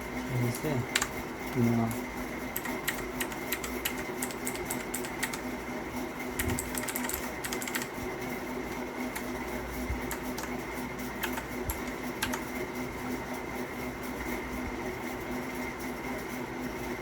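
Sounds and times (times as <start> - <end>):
clicky mechanical keyboard typing: 0.9 - 1.1, 2.6 - 5.4, 6.4 - 7.9, 10.1 - 10.6, 11.2 - 12.5
faint steady hum: 8.8 - 13.0.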